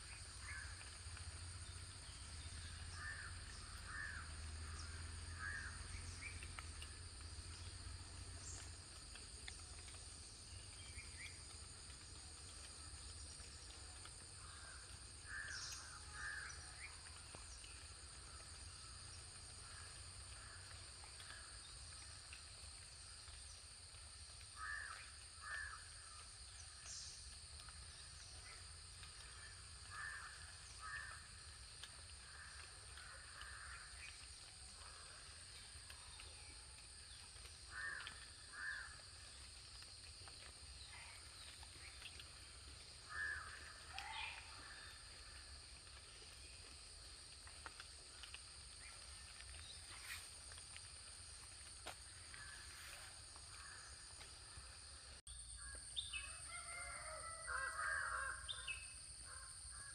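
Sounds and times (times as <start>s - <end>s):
insects droning: 0.0s - 59.9s
crows cawing: 3.0s - 5.8s, 24.6s - 26.2s, 29.9s - 31.3s, 32.3s - 33.9s, 37.7s - 39.0s, 43.0s - 45.4s, 56.6s - 58.7s.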